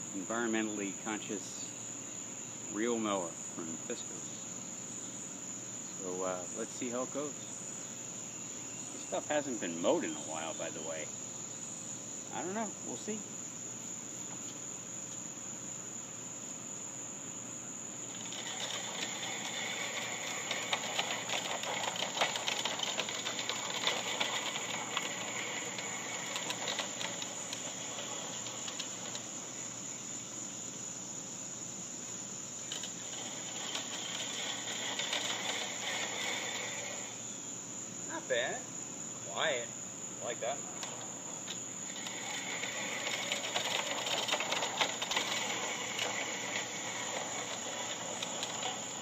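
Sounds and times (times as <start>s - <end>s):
crickets chirping: 0.0s - 49.0s
push reel mower cutting grass: 6.0s - 7.4s, 9.0s - 11.1s, 12.3s - 13.2s, 18.0s - 30.0s, 32.6s - 37.4s, 39.3s - 49.0s.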